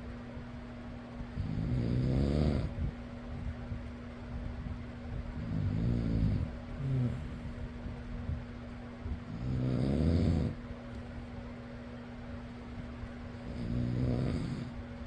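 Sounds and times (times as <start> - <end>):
fan humming: 0.0 - 15.0
person snoring: 1.4 - 2.7, 5.4 - 7.4, 9.3 - 10.6, 13.4 - 14.8.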